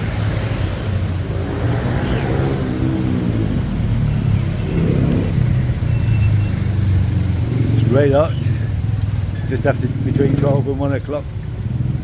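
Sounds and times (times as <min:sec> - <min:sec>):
road noise rumble: 0:00.0 - 0:12.0
vehicles passing: 0:00.0 - 0:12.0.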